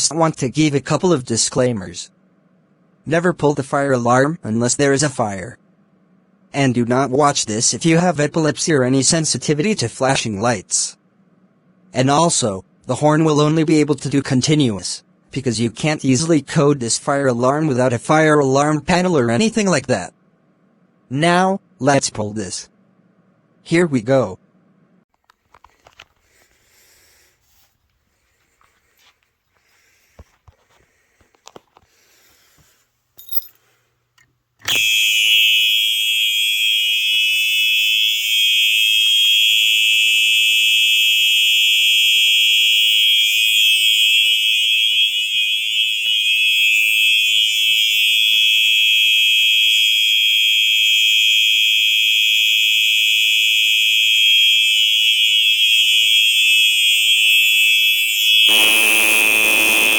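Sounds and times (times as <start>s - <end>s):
high-pitched electronic alarm horn: 34.7s - 59.9s.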